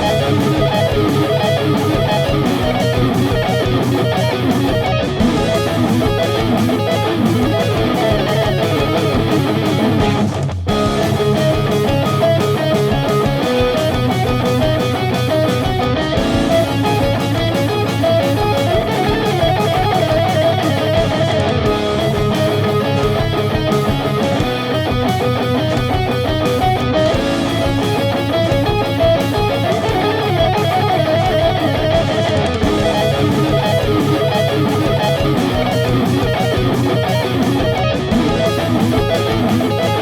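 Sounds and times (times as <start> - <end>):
electric guitar instrumental: 0.0 - 40.0.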